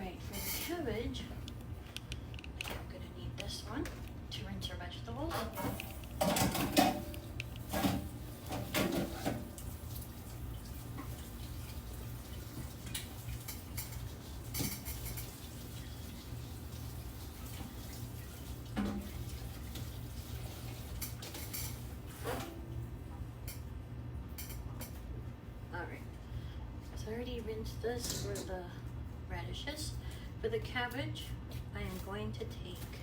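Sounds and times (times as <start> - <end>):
tap running water: 5.6 - 22.7
dishes clattering: 5.7 - 7.1.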